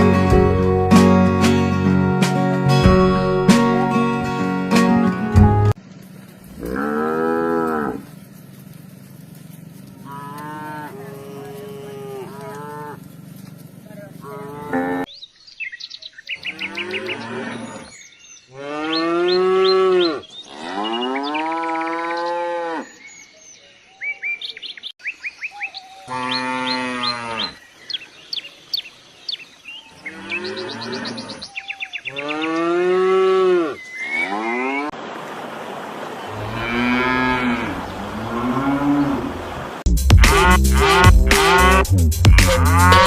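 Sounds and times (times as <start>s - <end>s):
cattle mooing: 6.5s - 8.2s, 9.9s - 15.1s, 16.4s - 17.9s, 18.6s - 22.9s, 30.0s - 31.5s, 32.1s - 34.9s, 36.3s - 39.6s, 40.2s - 43.0s
small birds chirping: 11.5s - 32.9s.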